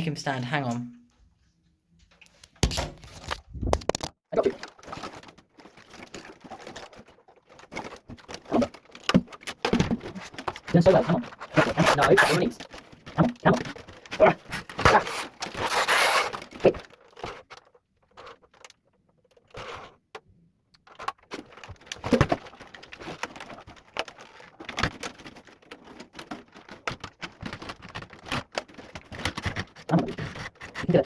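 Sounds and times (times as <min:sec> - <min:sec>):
wire rustling: 0:02.0 - 0:20.0, 0:20.8 - 0:31.0.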